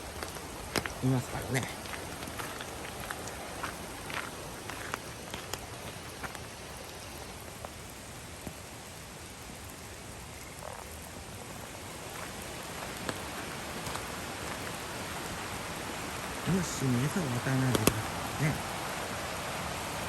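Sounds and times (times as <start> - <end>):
raindrops ticking: 0.0 - 19.0
steady rain hiss: 0.0 - 20.0.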